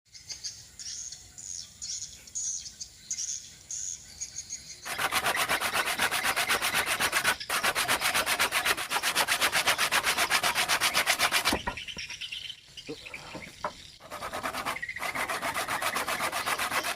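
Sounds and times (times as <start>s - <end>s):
rasping strokes on wood: 4.9s - 11.8s, 13.1s - 16.9s.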